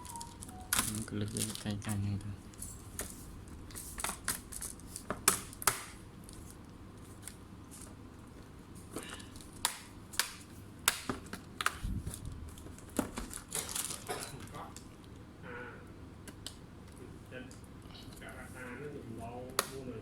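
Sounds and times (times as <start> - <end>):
plastic crinkling: 0.0 - 9.6, 11.2 - 14.9.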